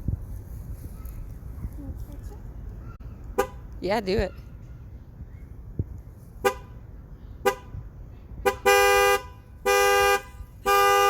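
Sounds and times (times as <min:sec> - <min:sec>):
car horn: 0:08.4 - 0:11.0.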